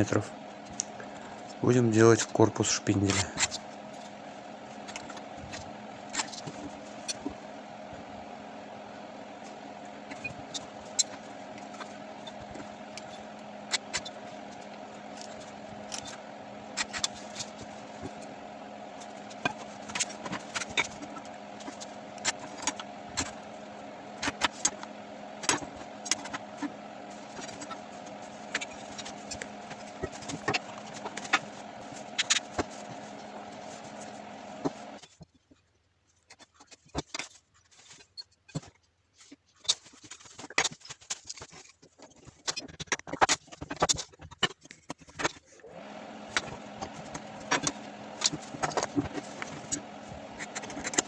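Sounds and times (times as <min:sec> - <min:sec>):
machine tool motor running: 0:00.0 - 0:35.0, 0:45.6 - 0:51.0.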